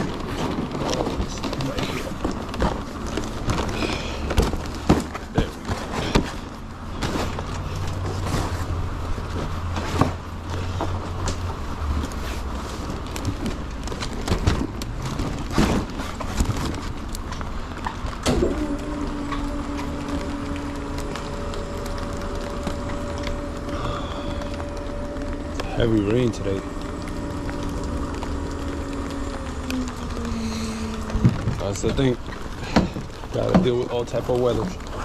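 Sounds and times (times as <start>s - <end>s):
cases knocking and clattering: 0.0s - 11.6s
steady low hum: 0.0s - 35.0s.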